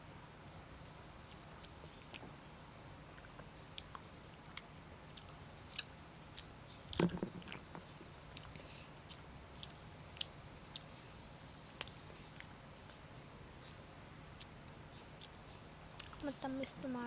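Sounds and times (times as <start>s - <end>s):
chewing and biting wafer: 3.1s - 13.0s, 14.4s - 16.2s
mouth clicks: 3.2s - 11.0s, 14.4s - 16.4s.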